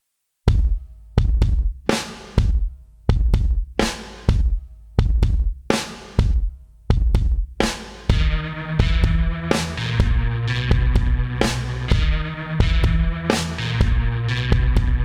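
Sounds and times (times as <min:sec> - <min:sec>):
music with heavy drum beat: 0:00.5 - 0:15.0
sustained bass notes: 0:08.1 - 0:15.0.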